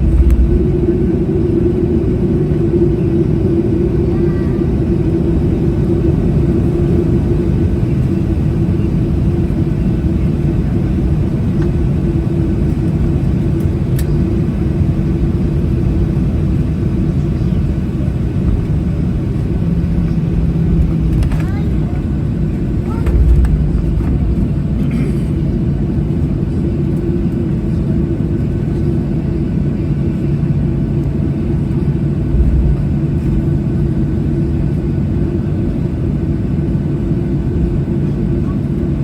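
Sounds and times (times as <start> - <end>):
constant low hum: 0.0 - 39.0
jet engines idling: 0.0 - 39.0.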